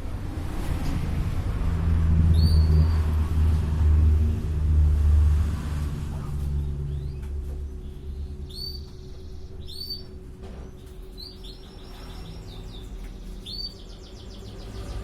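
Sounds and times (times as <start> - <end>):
low background rumble: 0.0 - 15.0
canary singing: 2.3 - 3.1, 6.8 - 15.0.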